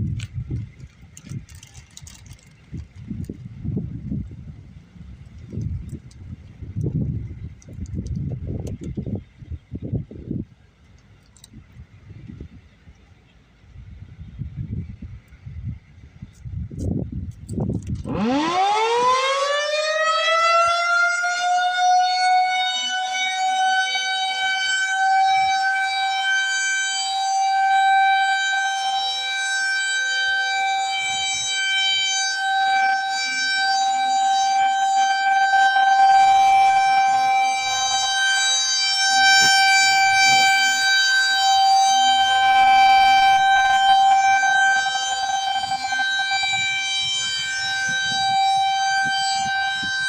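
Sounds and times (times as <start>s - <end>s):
warning siren winding up: 17.4s - 50.0s.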